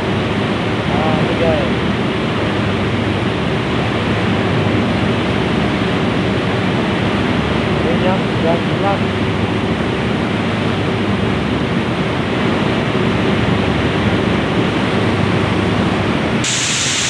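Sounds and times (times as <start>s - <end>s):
bright hiss: 16.4s - 17.0s
press machinery rushing din: 16.4s - 17.0s.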